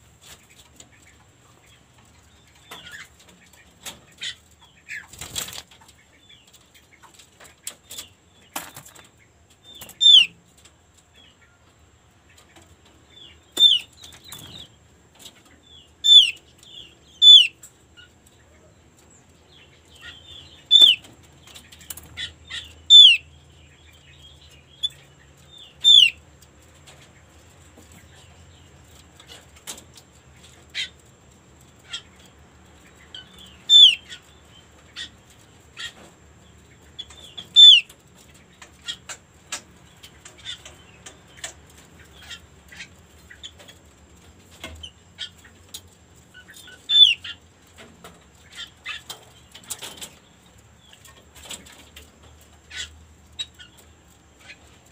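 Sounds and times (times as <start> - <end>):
bird calling with sliding notes: 16.0 - 16.4, 22.6 - 23.2, 25.8 - 26.2, 37.5 - 37.9.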